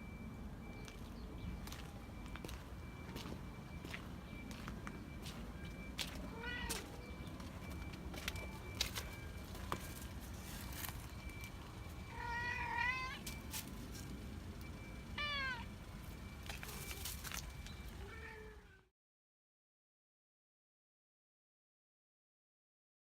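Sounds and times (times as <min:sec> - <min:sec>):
cat meowing: 0:06.3 - 0:06.9, 0:12.1 - 0:13.2, 0:15.2 - 0:15.7, 0:18.0 - 0:18.9.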